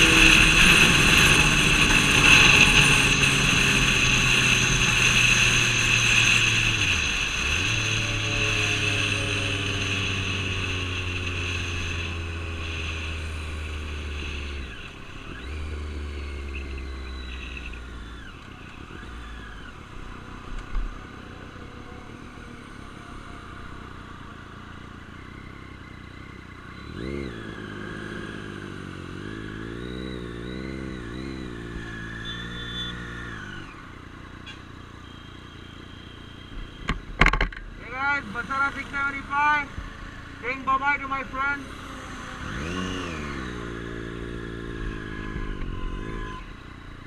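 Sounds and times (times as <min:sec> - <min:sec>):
motorcycle engine pitch sliding down: 0:00.0 - 0:23.4, 0:26.7 - 0:34.0, 0:41.8 - 0:47.0
motorcycle engine revving: 0:00.0 - 0:47.0.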